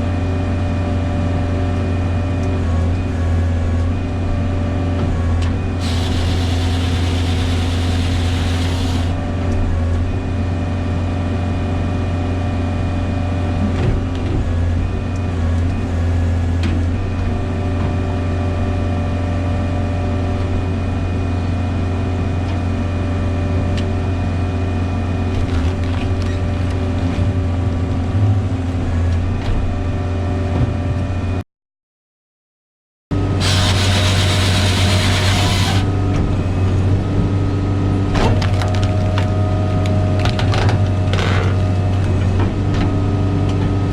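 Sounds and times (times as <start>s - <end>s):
engine running under load: 0.0s - 31.3s, 33.2s - 43.9s
hiss: 5.8s - 9.2s, 33.4s - 35.8s.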